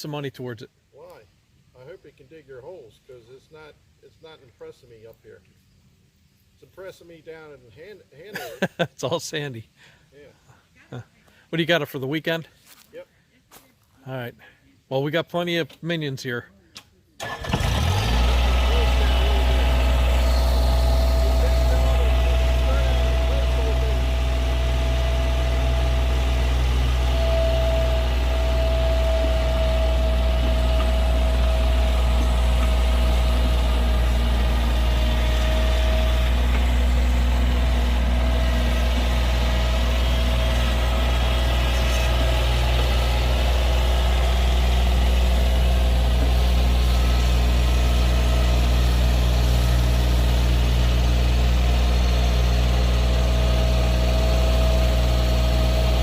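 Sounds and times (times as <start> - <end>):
engine idling with low hum: 17.2 - 56.0
thin steady whine: 18.7 - 48.9.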